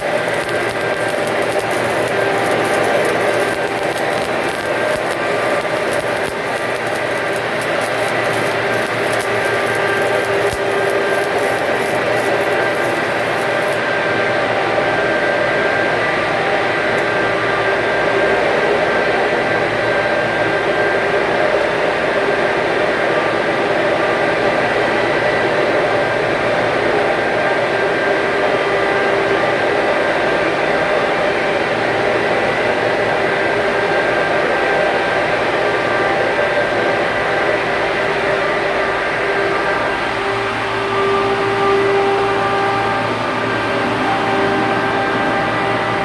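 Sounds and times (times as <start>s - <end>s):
welding arc crackling: 0.0s - 13.9s, 39.4s - 46.0s
loud mechanical drone with tones: 0.0s - 46.0s.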